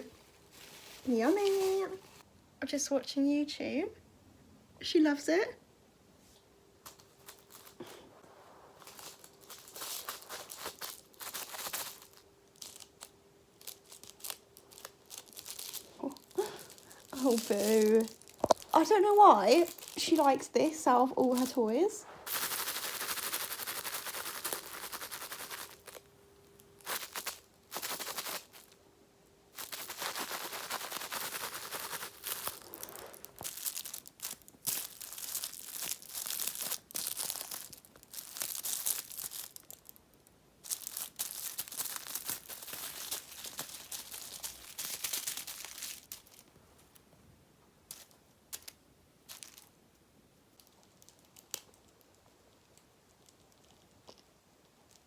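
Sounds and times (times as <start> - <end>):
kitten rustling and scratching: 0.0 - 2.2, 6.2 - 28.8, 29.5 - 40.0, 40.6 - 47.1.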